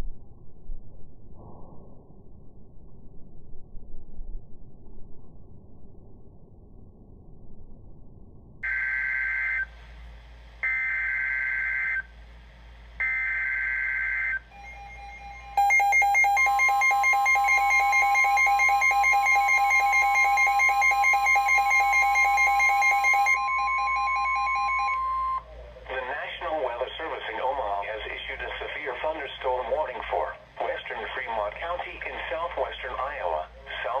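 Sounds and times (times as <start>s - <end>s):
two-tone attention signal: 14.5s - 25.5s
digital data tone bursts: 14.6s - 26.8s.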